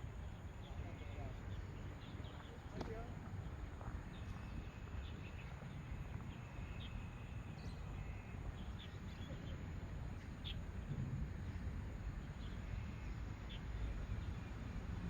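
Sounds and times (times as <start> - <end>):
faint bird chirps: 4.1 - 10.8
wind rumble on microphone: 8.4 - 13.4.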